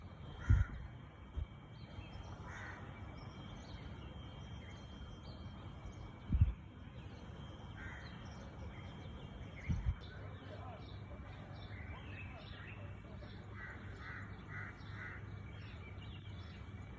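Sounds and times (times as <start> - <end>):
high chirping of small birds: 1.4 - 16.9
harsh bird calls: 9.6 - 16.7.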